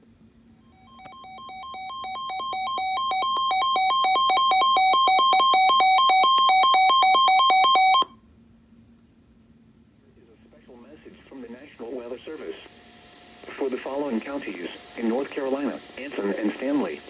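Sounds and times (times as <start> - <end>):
buzzy two-pitch alert tone: 0.8 - 8.0.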